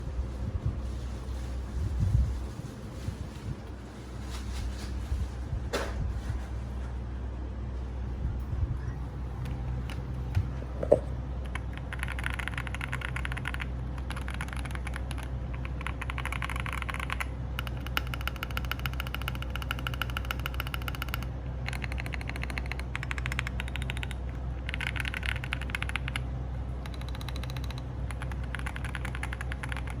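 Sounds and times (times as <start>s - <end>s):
steady low hum: 0.0s - 30.0s
fast typing on mechanical keyboard: 11.5s - 30.0s.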